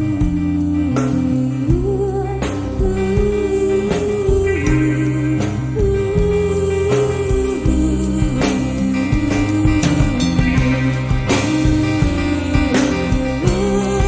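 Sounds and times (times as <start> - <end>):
guitar-backed song: 0.0 - 14.0.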